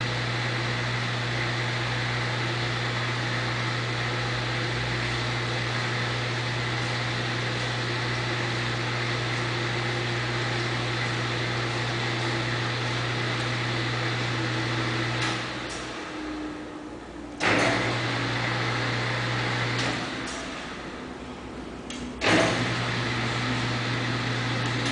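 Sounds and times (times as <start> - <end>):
metal lathe humming: 0.0 - 16.7.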